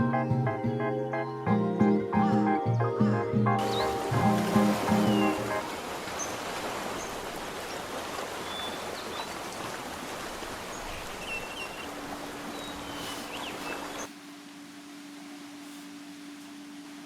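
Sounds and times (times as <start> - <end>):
water rushing: 3.6 - 17.0.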